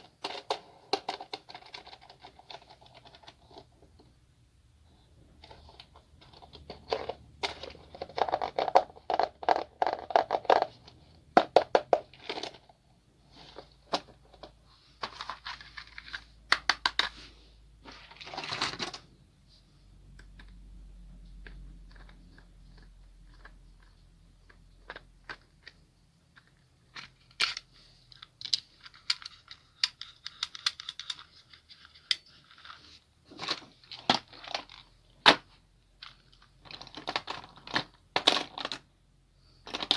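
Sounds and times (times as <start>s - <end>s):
plastic and cardboard crinkling: 5.4s - 19.1s, 21.4s - 38.8s.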